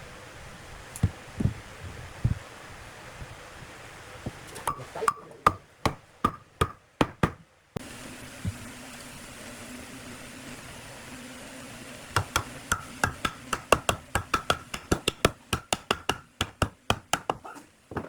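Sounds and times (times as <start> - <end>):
tool knocking on wood: 4.7 - 7.4, 12.2 - 18.0.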